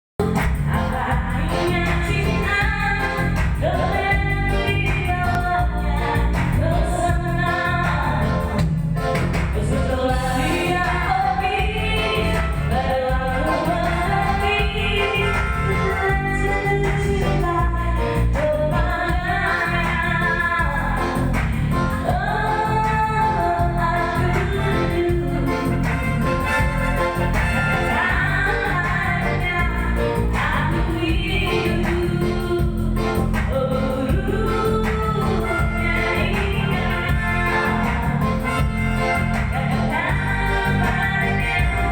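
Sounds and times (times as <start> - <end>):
woman singing: 0.2 - 8.7, 9.4 - 41.9
band with heavy bass and beat: 0.2 - 41.9.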